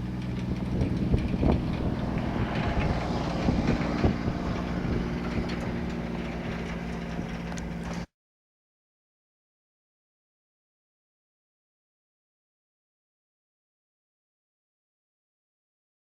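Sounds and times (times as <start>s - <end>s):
knocks and rattles: 0.0s - 8.1s
tractor diesel engine running: 0.0s - 8.1s.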